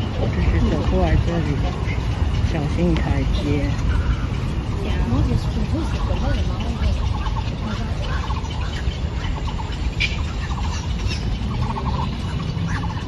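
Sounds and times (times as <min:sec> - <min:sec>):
birds pulsed calls: 0:00.0 - 0:13.0
steady low rumble: 0:00.0 - 0:13.0.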